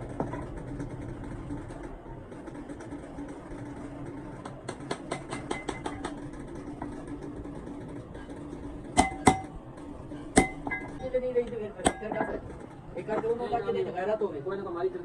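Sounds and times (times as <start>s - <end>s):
motor humming with ticking: 0.0s - 15.0s
ringing metal strikes: 9.0s - 9.6s, 10.2s - 11.2s.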